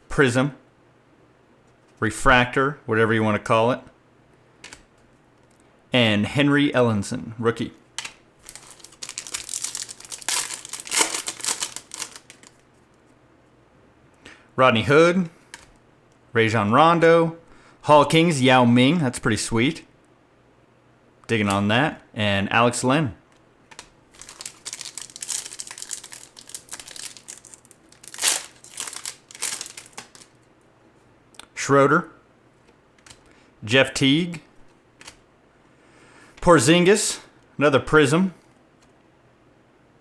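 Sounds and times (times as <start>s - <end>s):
wrapper tearing and crinkling: 8.4s - 12.6s, 24.1s - 30.4s.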